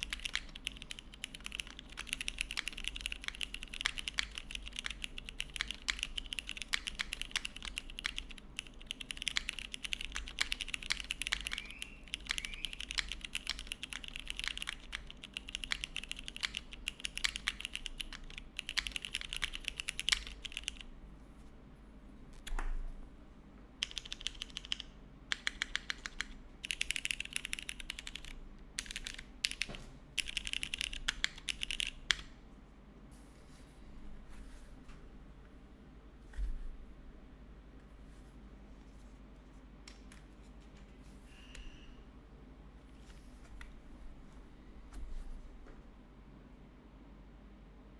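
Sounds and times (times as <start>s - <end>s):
typing on mechanical keyboard: 0.0s - 20.9s, 23.8s - 32.4s.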